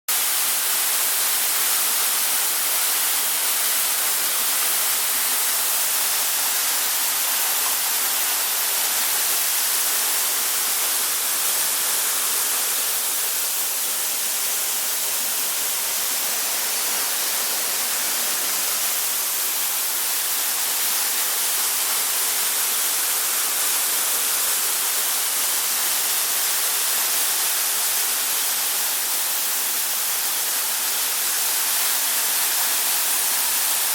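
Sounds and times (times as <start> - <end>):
waterfall rushing: 0.2 - 33.9.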